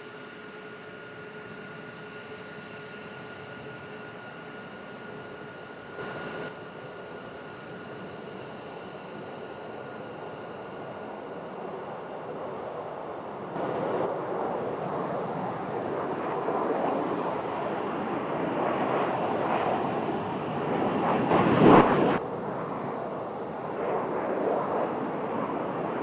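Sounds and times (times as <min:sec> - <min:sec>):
jet aircraft rushing noise: 0:13.5 - 0:26.0
wind buffeting microphone: 0:13.6 - 0:22.7.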